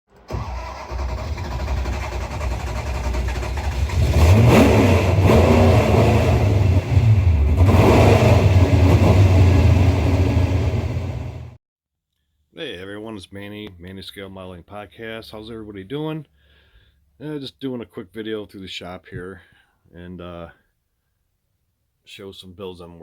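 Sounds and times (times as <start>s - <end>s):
car engine revving: 0.3s - 11.6s.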